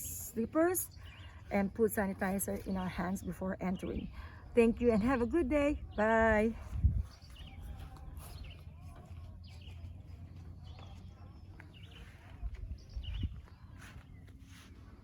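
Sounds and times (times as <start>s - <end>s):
steady low rumble: 3.6s - 15.0s
soft low thumps: 5.8s - 14.3s.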